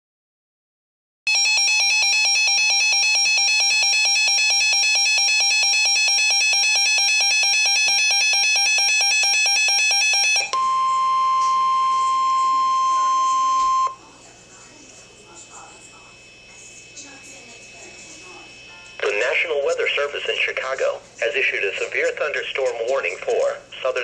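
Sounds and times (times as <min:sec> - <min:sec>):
two-tone alarm warbling: 0:01.3 - 0:14.0
steady high tone: 0:09.1 - 0:14.2, 0:14.8 - 0:21.9.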